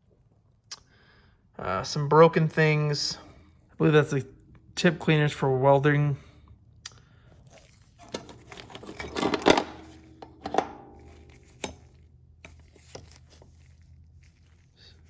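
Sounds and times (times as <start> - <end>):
metal tools clinking in toolbox: 8.0 - 13.2.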